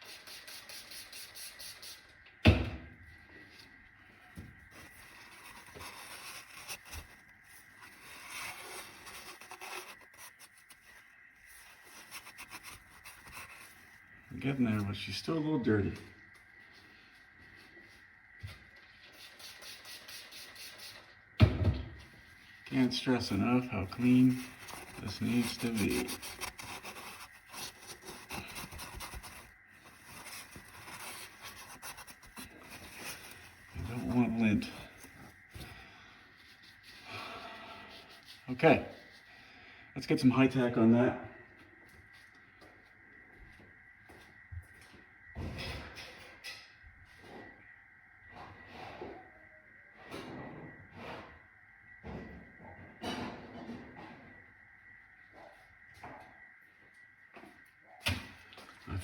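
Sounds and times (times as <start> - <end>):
rag rubbing and scraping metal: 23.5 - 35.2.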